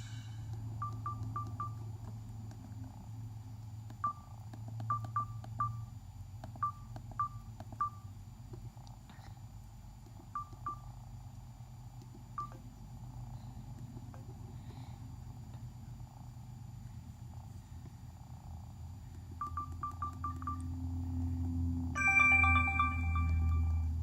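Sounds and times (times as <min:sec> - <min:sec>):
keypad beeps: 0:00.8 - 0:01.8, 0:03.9 - 0:05.9, 0:06.5 - 0:08.1, 0:10.3 - 0:10.9, 0:12.4 - 0:12.6, 0:19.4 - 0:20.7, 0:22.0 - 0:24.0.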